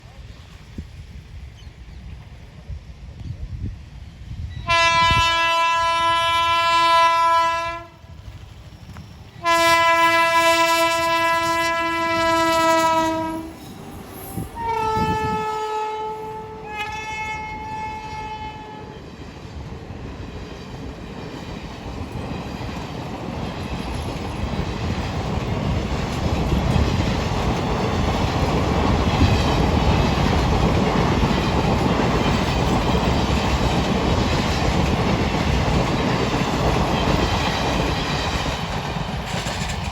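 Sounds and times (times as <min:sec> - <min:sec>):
locomotive horn blasts: 0:04.6 - 0:08.0, 0:09.4 - 0:13.6, 0:14.6 - 0:18.9
train wheels clattering: 0:18.9 - 0:39.9.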